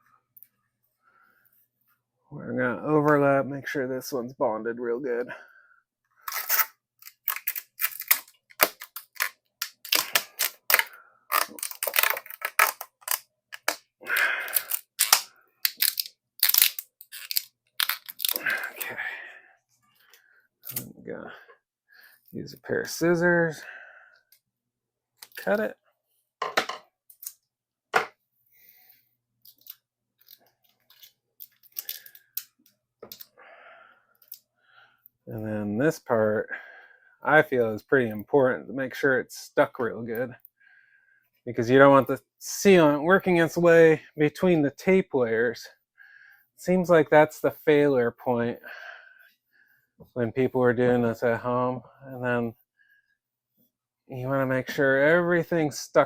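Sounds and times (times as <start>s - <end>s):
rim tape crackling and clicking: 6.2s - 18.8s.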